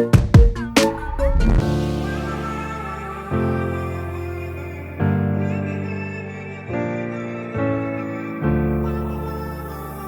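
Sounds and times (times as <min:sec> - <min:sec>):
sustained music chord: 0:00.9 - 0:05.0.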